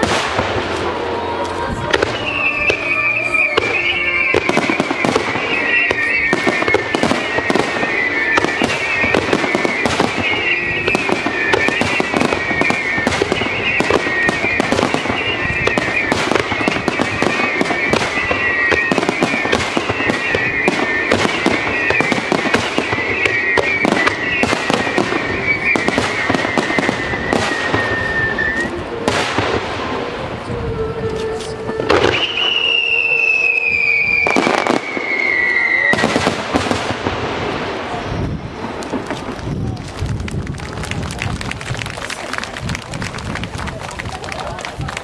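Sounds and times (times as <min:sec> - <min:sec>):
fireworks bursting and crackling: 0:00.0 - 0:45.0.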